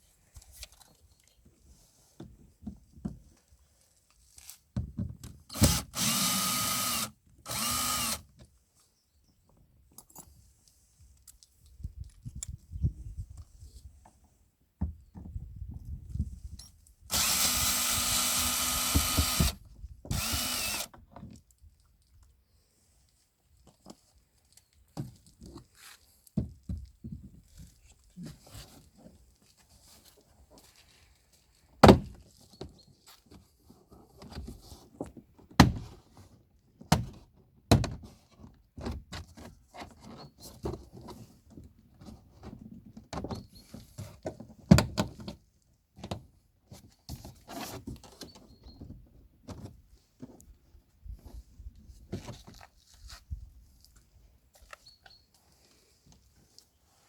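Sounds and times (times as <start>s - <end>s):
power drill running: 5.6s - 8.2s, 17.1s - 20.9s.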